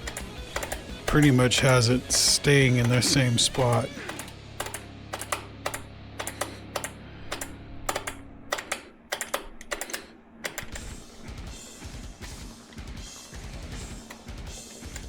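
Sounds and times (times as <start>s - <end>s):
clicks and taps of tools: 0.0s - 1.9s, 4.1s - 10.8s
low hum: 1.1s - 14.5s.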